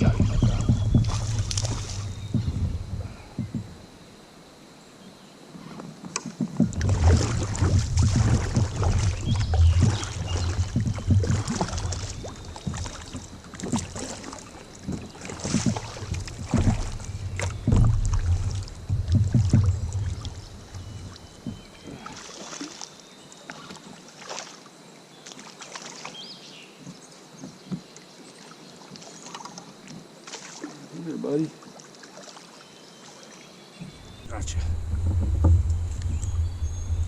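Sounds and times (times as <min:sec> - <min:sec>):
knocks on kayak: 0:00.0 - 0:03.8, 0:06.2 - 0:13.0, 0:14.8 - 0:21.7, 0:33.8 - 0:37.0
water splashes: 0:00.0 - 0:03.9, 0:06.2 - 0:26.2, 0:28.2 - 0:37.0
wind buffeting microphone: 0:00.0 - 0:03.9, 0:06.6 - 0:13.4, 0:33.8 - 0:37.0.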